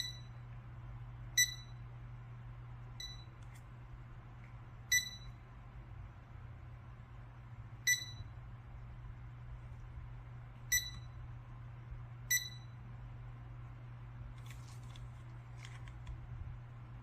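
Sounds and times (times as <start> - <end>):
thermometer short beeps: 0.0 - 0.4, 1.4 - 1.8, 3.0 - 3.4, 4.9 - 5.4, 7.8 - 8.4, 10.7 - 11.2, 12.3 - 12.8
low steady hum: 0.0 - 17.0.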